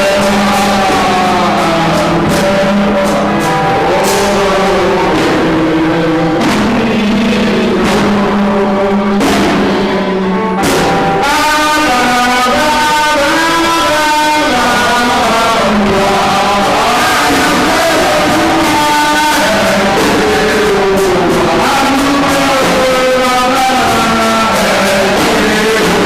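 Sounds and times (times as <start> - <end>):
sustained chords with melody: 0.0 - 12.3
percussion hits: 0.0 - 26.0.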